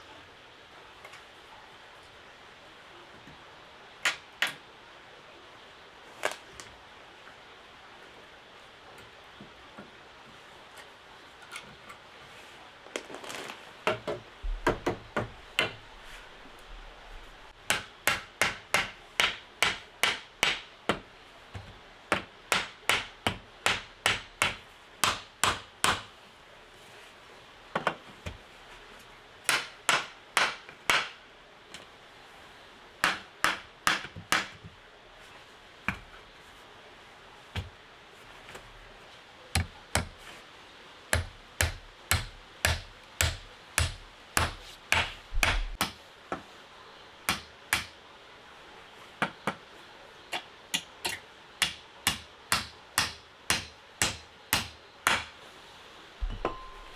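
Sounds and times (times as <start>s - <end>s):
hand tool striking wood: 39.6s - 40.2s, 41.2s - 46.0s, 50.8s - 55.3s.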